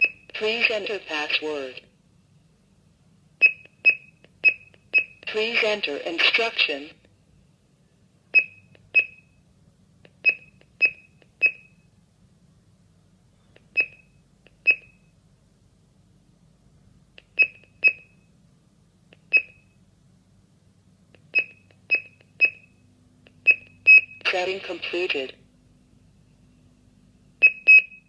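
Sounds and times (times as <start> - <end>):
keypad beeps: 3.4 - 5.3, 8.3 - 9.4, 10.2 - 11.9, 13.7 - 15.1, 17.3 - 18.3, 19.2 - 19.8, 21.3 - 22.8, 23.4 - 24.5, 27.4 - 28.0.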